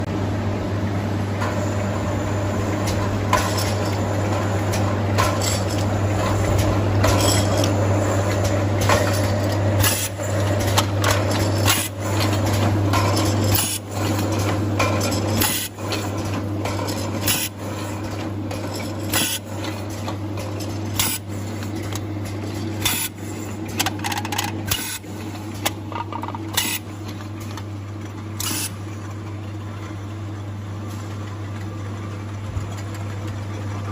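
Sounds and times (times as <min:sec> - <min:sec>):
machine motor hum: 0:00.0 - 0:33.9.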